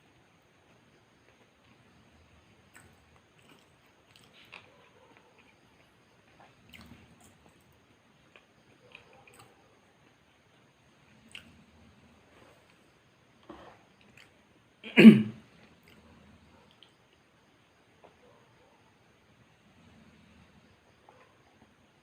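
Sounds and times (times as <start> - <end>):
person chewing: 2.7 - 7.6, 11.3 - 11.5.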